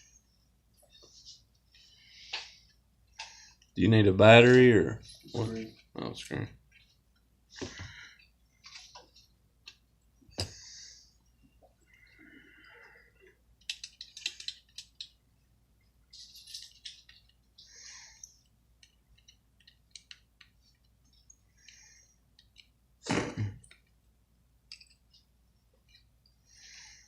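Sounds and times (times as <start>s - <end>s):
tools clicking and rattling: 13.6s - 15.2s, 16.1s - 17.4s.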